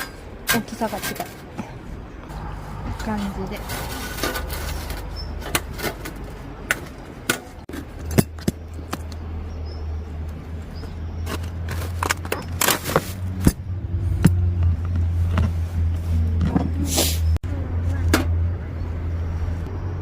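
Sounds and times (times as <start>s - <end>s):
low rumble: 2.1s - 5.5s.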